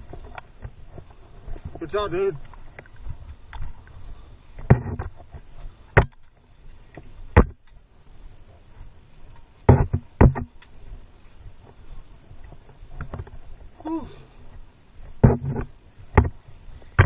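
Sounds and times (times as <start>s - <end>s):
low steady background: 0.0s - 17.0s
sharp knocks: 4.7s - 5.1s, 7.4s - 7.6s, 9.7s - 10.5s, 15.2s - 16.4s.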